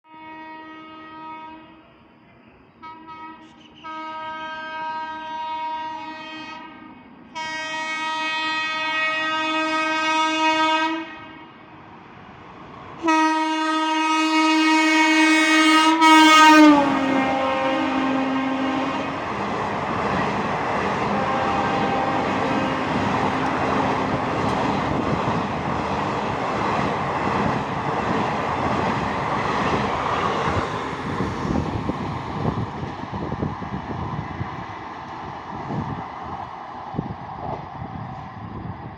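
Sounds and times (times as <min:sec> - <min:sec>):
train horn blasts: 0:00.0 - 0:02.0, 0:02.8 - 0:11.6, 0:13.0 - 0:19.2, 0:21.0 - 0:24.6
train wheels clattering: 0:21.7 - 0:30.6.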